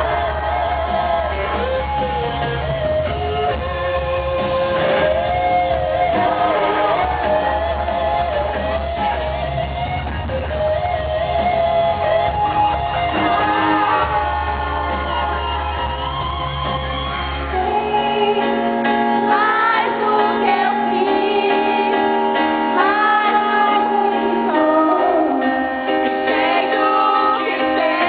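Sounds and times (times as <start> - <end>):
band playing pop-rock song: 0.0 - 28.0
person singing: 17.4 - 28.0.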